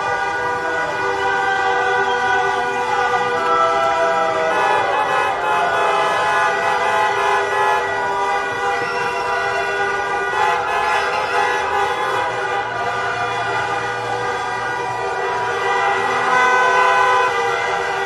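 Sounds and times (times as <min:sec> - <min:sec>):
car horns honking: 0:00.0 - 0:18.0
crowd cheering: 0:00.0 - 0:18.0.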